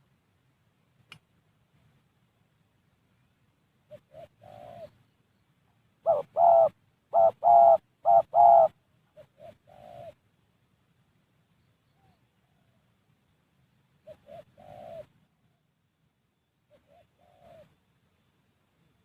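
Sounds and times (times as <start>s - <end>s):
dove cooing: 3.9s - 5.0s, 6.0s - 10.2s, 14.0s - 15.6s, 16.7s - 17.8s.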